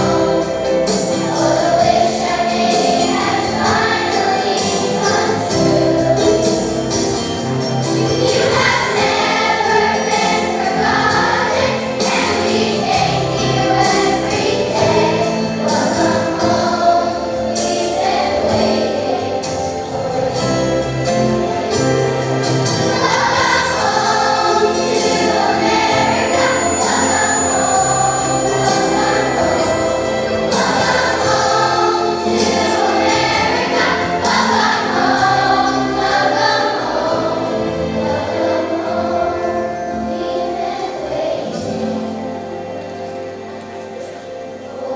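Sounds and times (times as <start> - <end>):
chorus singing: 0.0 - 44.9.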